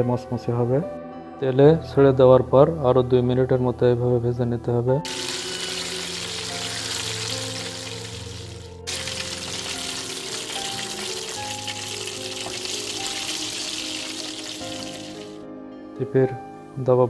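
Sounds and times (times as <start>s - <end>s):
wings deep-frying in oil: 5.1s - 15.4s.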